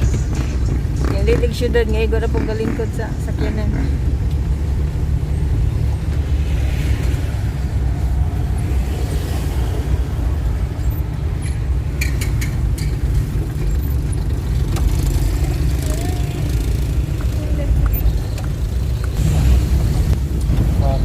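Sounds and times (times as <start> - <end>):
vehicle engine and road rumble: 0.0 - 21.0.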